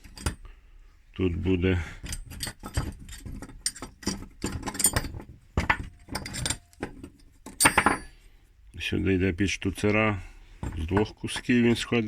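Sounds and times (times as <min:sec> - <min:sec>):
small metal parts clinking: 0:00.0 - 0:00.5, 0:02.0 - 0:08.2.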